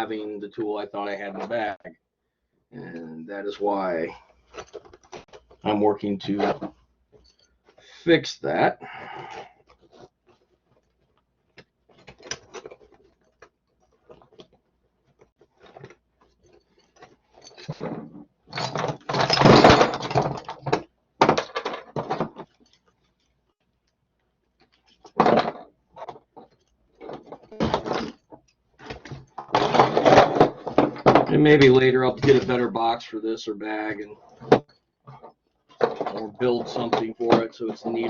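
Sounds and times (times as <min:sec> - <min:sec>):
tool bag rustling: 0:04.2 - 0:08.0, 0:09.0 - 0:20.7.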